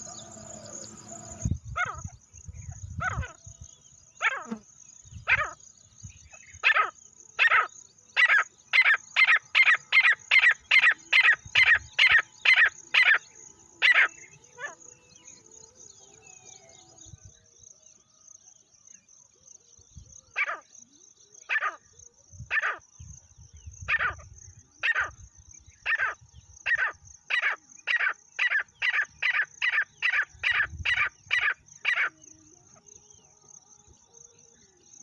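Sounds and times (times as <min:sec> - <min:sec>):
francolin calling: 0:00.0 - 0:17.2, 0:25.8 - 0:34.8.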